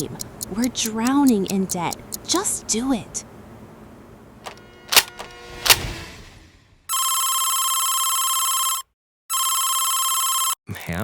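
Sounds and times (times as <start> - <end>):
telephone ringing: 6.9 - 10.6.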